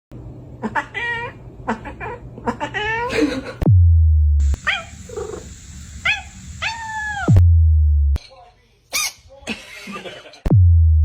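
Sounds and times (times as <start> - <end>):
pet animal high-pitched calls: 4.6 - 7.3.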